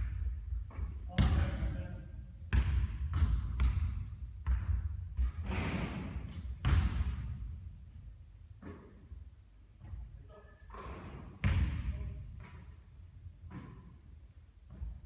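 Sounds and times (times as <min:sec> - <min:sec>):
basketball bouncing: 0:00.0 - 0:01.6, 0:02.5 - 0:05.4, 0:06.3 - 0:07.3, 0:10.7 - 0:12.6.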